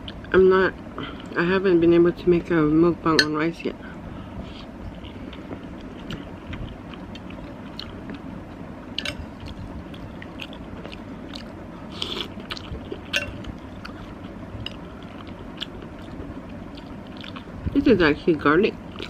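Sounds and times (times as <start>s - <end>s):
chewing and mouth sounds: 4.5s - 17.8s.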